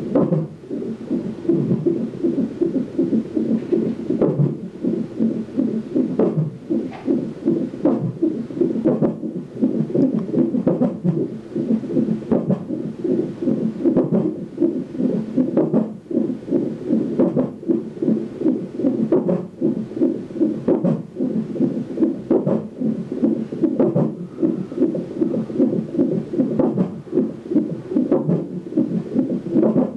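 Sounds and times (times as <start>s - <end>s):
fast fetal heartbeat pulse: 0.0s - 29.9s
sharp hiccup knocks: 0.2s - 9.2s, 20.7s - 29.9s.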